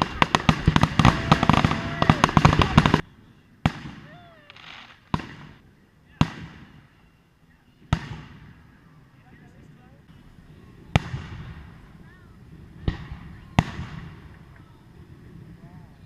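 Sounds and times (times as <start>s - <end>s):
single firework bangs echoing: 0.0s - 3.0s, 3.6s - 5.6s, 7.8s - 8.6s, 10.9s - 11.8s, 12.8s - 14.6s
fireworks crackling bangs: 0.0s - 7.1s, 7.8s - 8.7s, 10.1s - 16.0s.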